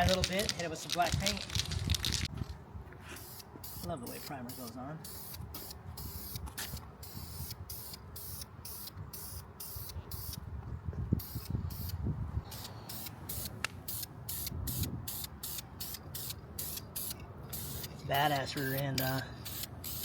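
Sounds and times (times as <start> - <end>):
spray can hissing: 3.2 - 6.4, 11.2 - 20.0.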